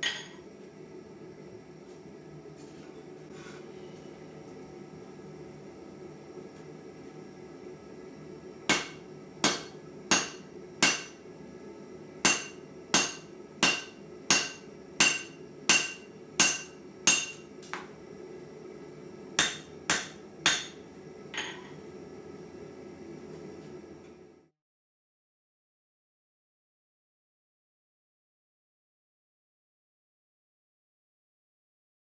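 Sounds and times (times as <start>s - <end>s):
hammer striking steel on anvil: 0.0s - 0.4s, 8.7s - 11.2s, 12.2s - 17.5s, 19.4s - 20.8s
steady low hum: 0.0s - 24.5s.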